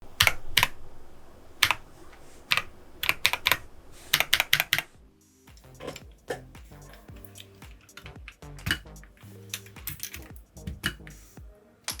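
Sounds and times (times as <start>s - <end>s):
mechanical keyboard clacking: 0.1s - 5.0s
background music: 1.8s - 12.0s.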